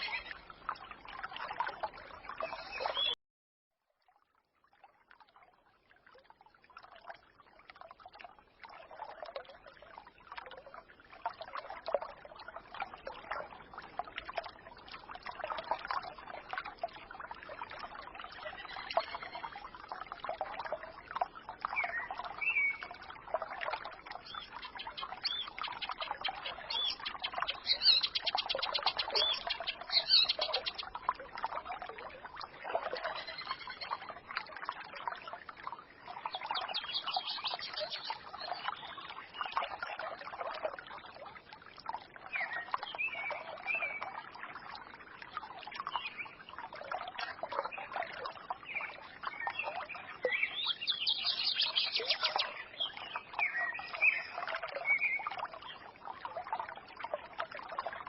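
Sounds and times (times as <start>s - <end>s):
stream babbling: 0.0s - 3.2s, 5.2s - 58.0s
songbirds chirping: 1.7s - 3.2s, 24.1s - 31.8s, 36.1s - 40.0s, 47.2s - 55.8s.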